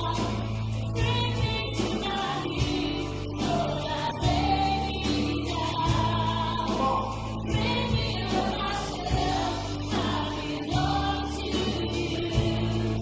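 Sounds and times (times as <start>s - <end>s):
band playing worship music: 0.0s - 13.0s
group of voices singing: 0.0s - 13.0s.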